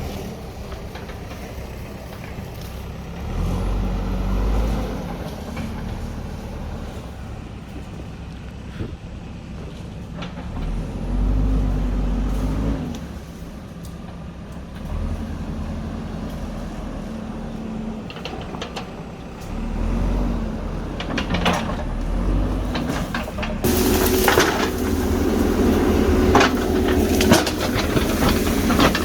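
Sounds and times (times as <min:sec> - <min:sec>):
diesel engine revving under load: 0:00.0 - 0:08.0, 0:10.4 - 0:29.0
loud rough noise: 0:19.4 - 0:29.0.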